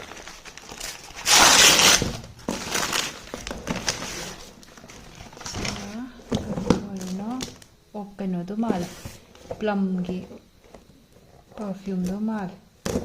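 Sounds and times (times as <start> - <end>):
packaging tearing: 0.0 - 5.6
packaging crinkling: 0.0 - 6.0.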